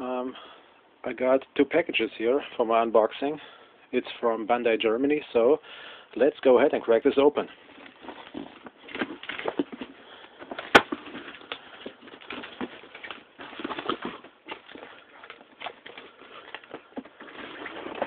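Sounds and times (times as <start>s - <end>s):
cardboard box rustling and crinkling: 7.5s - 18.0s.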